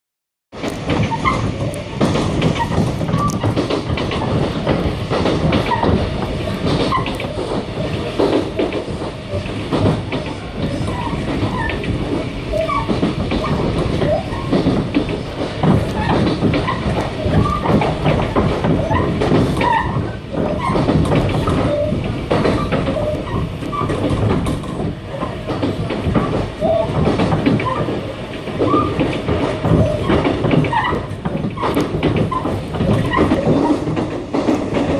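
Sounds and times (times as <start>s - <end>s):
electric train rumbling on rails: 0.5s - 34.9s
clicks and knocks: 0.6s - 34.9s
train wheel squeaks: 0.7s - 34.9s.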